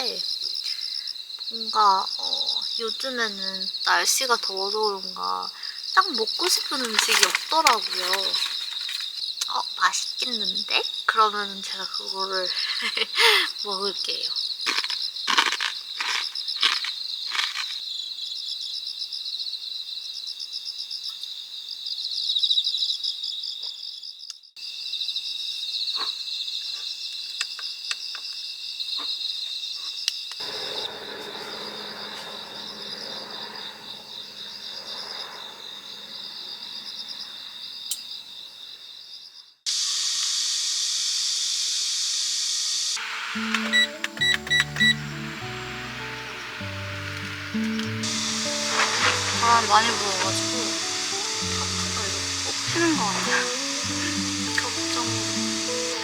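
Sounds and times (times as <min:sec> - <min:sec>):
crickets chirping: 0:00.0 - 0:56.0
loud even hiss: 0:05.6 - 0:09.2, 0:30.4 - 0:37.9, 0:39.7 - 0:56.0.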